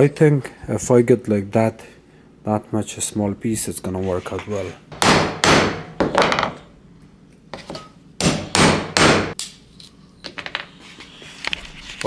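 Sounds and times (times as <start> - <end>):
knocking strokes on wood: 8.2 - 9.4.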